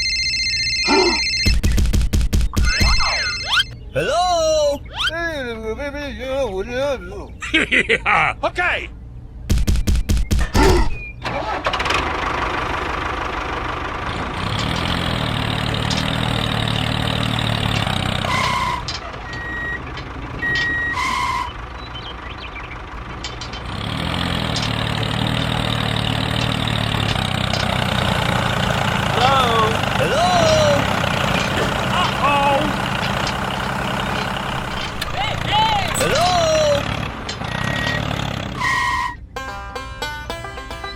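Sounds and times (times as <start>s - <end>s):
short beeps: 2.6s - 3.8s
tractor engine running: 11.2s - 38.6s, 39.2s - 40.9s.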